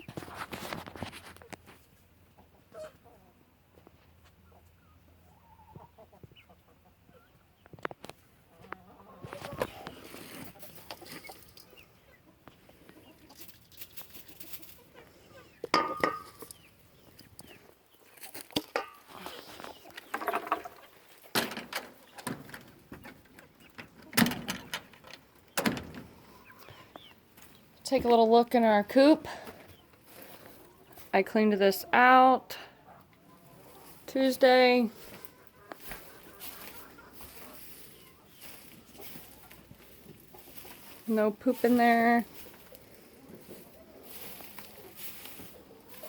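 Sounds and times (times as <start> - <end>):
poultry clucking softly: 1.3 - 13.6, 26.1 - 27.7, 31.9 - 34.1, 35.0 - 41.1
hen clucking: 2.2 - 46.0
wooden door knocks and rattles: 24.1 - 24.8.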